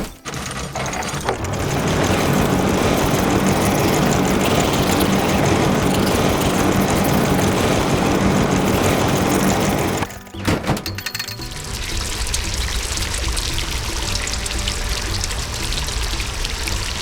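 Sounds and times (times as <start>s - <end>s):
mechanical engine noise humming: 0.0s - 10.9s.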